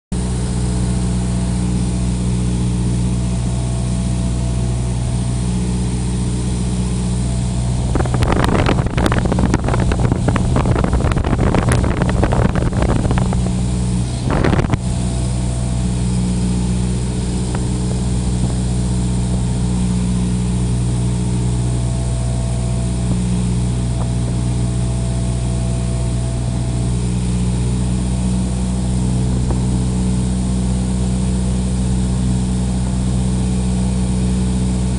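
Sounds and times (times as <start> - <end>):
piston aircraft engine droning: 0.1 - 34.9
loud crackling noise: 7.6 - 16.2.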